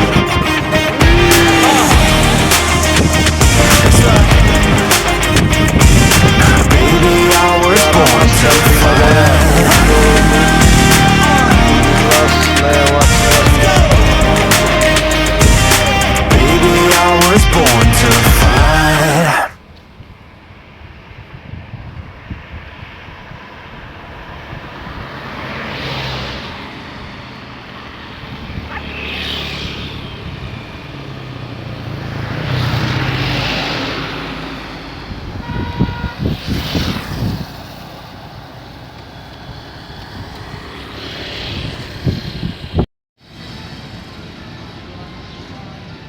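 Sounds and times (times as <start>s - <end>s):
vehicles driving past: 0.0s - 46.0s
short vehicle horn: 35.4s - 36.4s.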